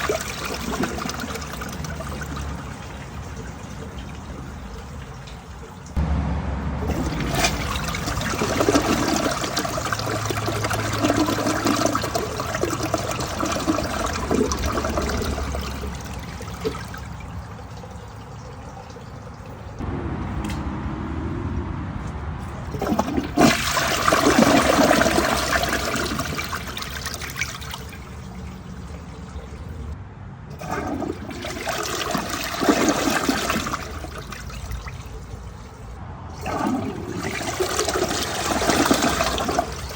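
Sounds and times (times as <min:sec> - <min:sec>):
toilet flushing: 0:00.0 - 0:06.0, 0:06.8 - 0:19.8, 0:22.6 - 0:39.9.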